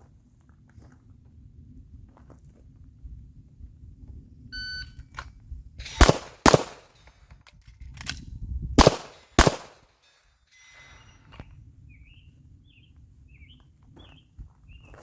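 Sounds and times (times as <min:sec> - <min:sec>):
handgun shots: 0:06.0 - 0:06.9, 0:08.8 - 0:09.8
magazine reload clicks: 0:08.8 - 0:09.8.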